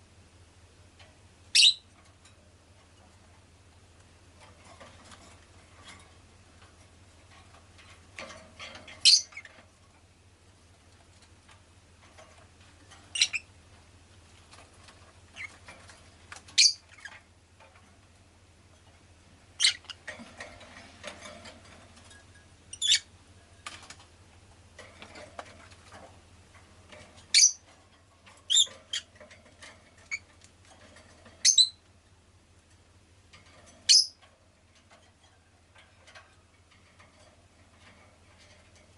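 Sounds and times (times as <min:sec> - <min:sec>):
lovebird chirping: 0:01.5 - 0:01.9, 0:09.0 - 0:09.5, 0:13.1 - 0:13.5, 0:16.6 - 0:17.1, 0:19.6 - 0:20.0, 0:22.7 - 0:23.1, 0:27.3 - 0:27.6, 0:28.5 - 0:29.1, 0:31.4 - 0:31.8, 0:33.9 - 0:34.2.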